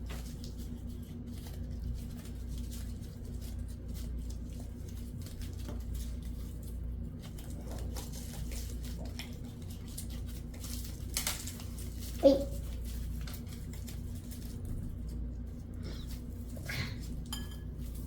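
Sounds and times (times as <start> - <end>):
tapping and rustling of craft pieces: 1.4 - 15.2.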